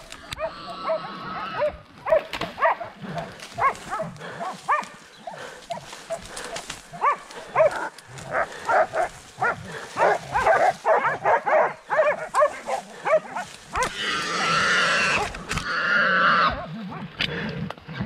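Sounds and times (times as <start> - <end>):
wild boar squealing: 0.1 - 1.8, 12.2 - 17.0
dogs barking excitedly: 0.3 - 15.5.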